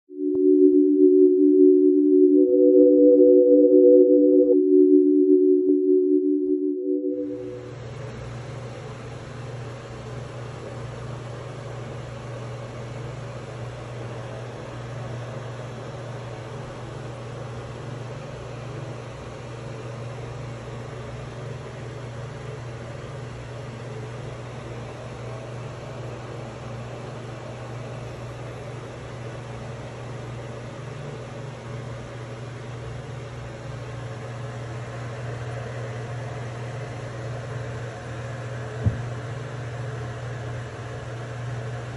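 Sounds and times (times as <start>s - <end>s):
low hum: 0.0s - 7.7s.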